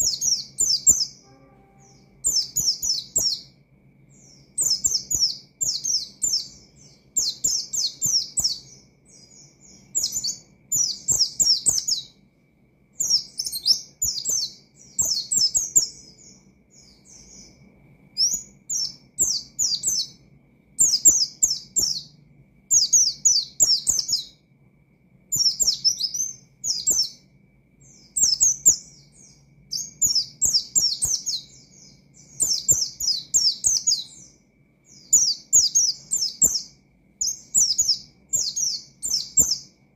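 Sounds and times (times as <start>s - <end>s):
bird singing high down-slurred notes: 0.0s - 12.1s.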